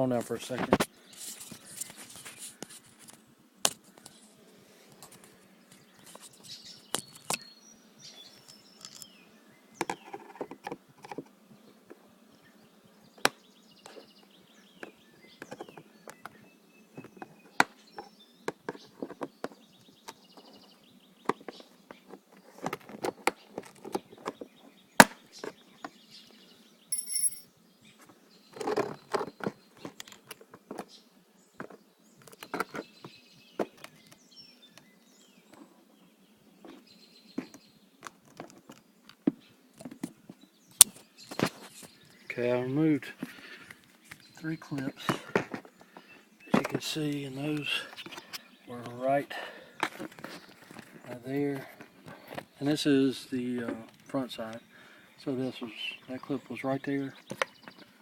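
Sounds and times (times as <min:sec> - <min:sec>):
birds chirping: 0:00.0 - 0:58.0.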